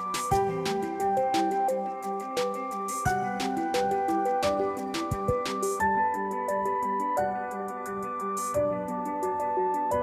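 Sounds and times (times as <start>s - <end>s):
background music with percussion beat: 0.0s - 10.0s.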